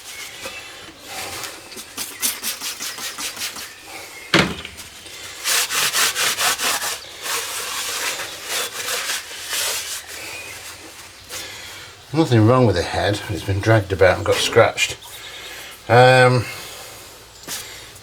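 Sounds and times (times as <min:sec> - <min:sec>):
loud knock: 0:04.4 - 0:04.7
rag rubbing metal: 0:12.2 - 0:15.0.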